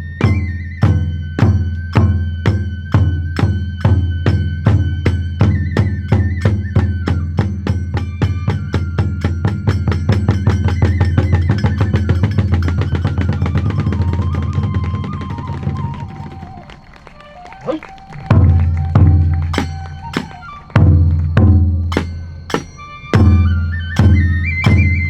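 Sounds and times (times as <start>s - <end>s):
taiko drum roll: 0.2s - 16.6s, 18.2s - 25.0s
ringing metal tones: 6.1s - 14.3s, 19.1s - 25.0s.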